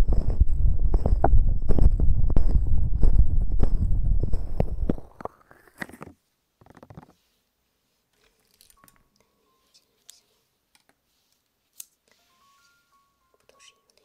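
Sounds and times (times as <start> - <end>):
scratching: 0.0 - 7.2.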